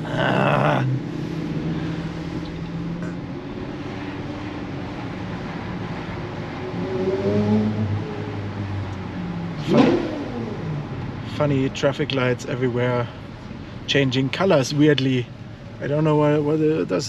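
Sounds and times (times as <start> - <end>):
car engine accelerating: 0.0 - 13.4.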